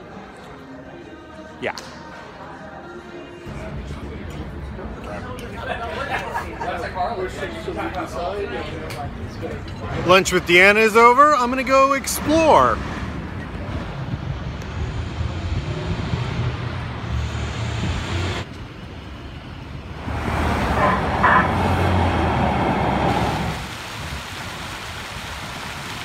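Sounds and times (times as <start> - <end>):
cars passing on road: 8.6 - 26.0
louder vehicle passing: 11.6 - 23.7.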